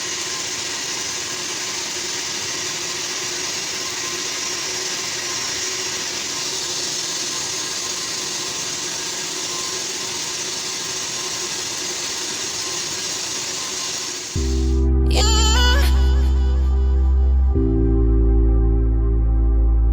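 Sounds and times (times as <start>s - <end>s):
welding arc sizzling: 0.0s - 14.8s
faint hum: 14.4s - 19.9s.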